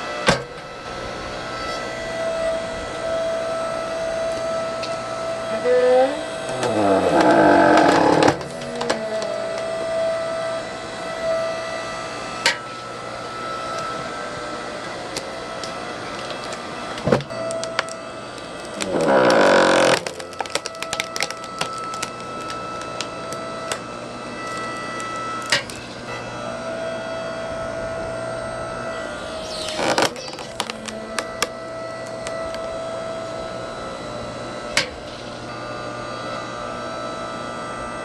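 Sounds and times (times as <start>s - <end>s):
hydraulic log splitter humming: 0.0s - 38.0s
wood creaking: 1.6s - 10.5s, 13.8s - 23.8s, 27.9s - 32.6s
sharp wood cracks: 15.1s - 23.1s, 29.5s - 31.6s.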